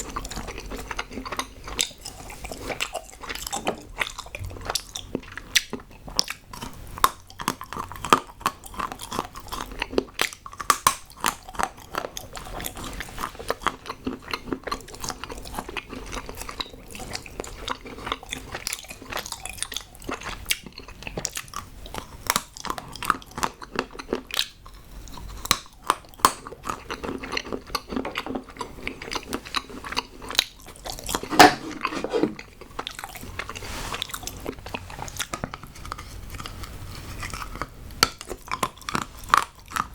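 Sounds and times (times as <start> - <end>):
chewing hard chocolate: 0.0 - 39.9.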